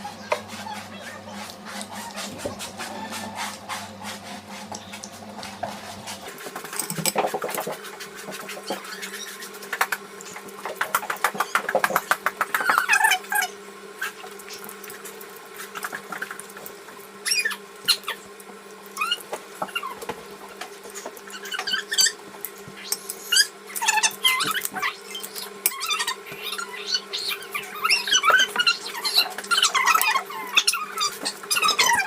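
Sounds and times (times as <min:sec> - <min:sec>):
squeaky sucking noises: 0:00.0 - 0:05.1, 0:08.4 - 0:10.4, 0:20.9 - 0:22.2, 0:22.8 - 0:32.0
low electrical hum: 0:00.0 - 0:32.0
eating smacks and clicks: 0:06.6 - 0:13.0.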